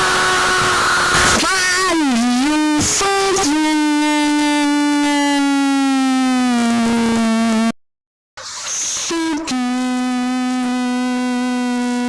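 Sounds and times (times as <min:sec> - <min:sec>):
buzzy tone sliding down in pitch: 0:02.6 - 0:07.7, 0:08.7 - 0:12.0.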